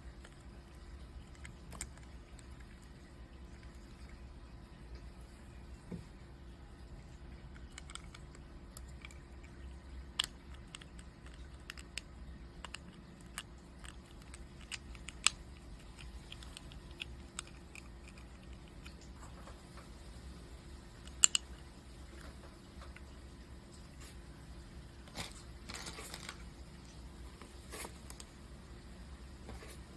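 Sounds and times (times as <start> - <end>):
plastic bricks clicking: 21.0 - 21.6.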